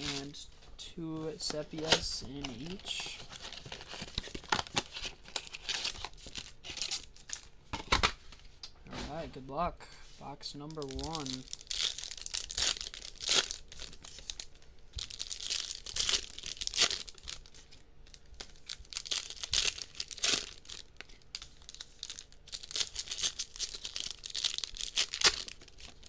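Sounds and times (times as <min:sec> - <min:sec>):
card packs being torn open: 0:00.0 - 0:00.4, 0:01.4 - 0:08.2, 0:10.7 - 0:26.0
wrappers crinkling: 0:00.0 - 0:00.5, 0:01.3 - 0:07.5, 0:10.7 - 0:26.0.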